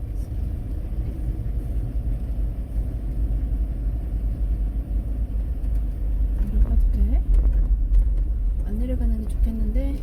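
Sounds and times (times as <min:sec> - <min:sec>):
van engine and road noise: 0:00.0 - 0:10.0.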